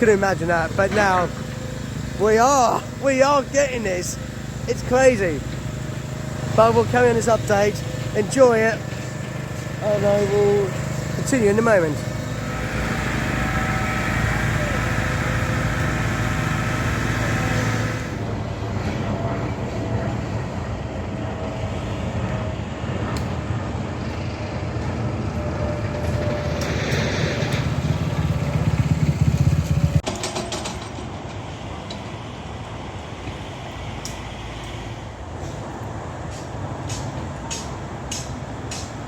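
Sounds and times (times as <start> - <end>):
quieter steady rumble: 0.0 - 18.4
low mechanical rumble: 0.0 - 30.1.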